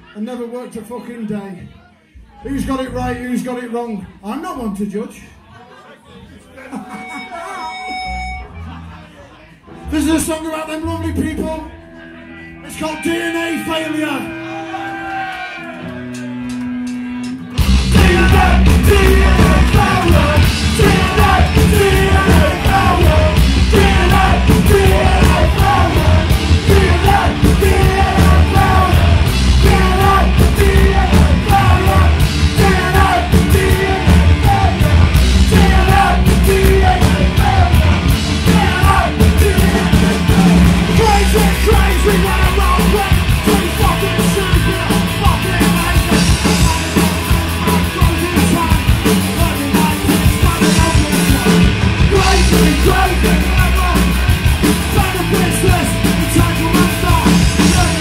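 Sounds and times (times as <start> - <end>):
punk band playing live: 6.8 - 8.9, 11.1 - 58.0
shouted singing: 14.3 - 16.2, 17.6 - 58.0.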